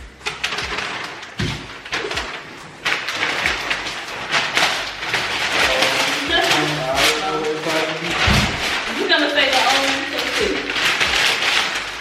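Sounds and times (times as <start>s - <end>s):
wrapping paper rustling: 0.0s - 12.0s.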